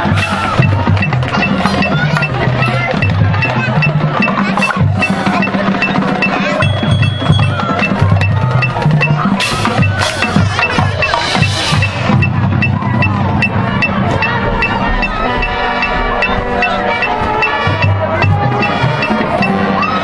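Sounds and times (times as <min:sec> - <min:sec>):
drums and percussion: 0:00.0 - 0:20.0
marching band playing: 0:00.0 - 0:20.0
steady high tick: 0:07.8 - 0:19.5.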